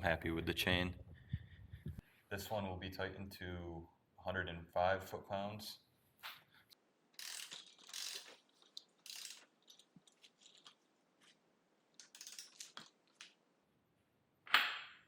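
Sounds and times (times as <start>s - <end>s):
hand tools and metal parts rattling: 7.2s - 10.8s, 12.0s - 13.3s.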